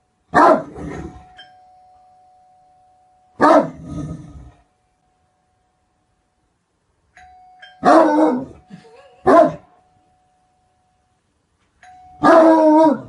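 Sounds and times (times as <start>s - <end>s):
large dog barking deeply: 0.3s - 1.1s, 3.4s - 4.2s.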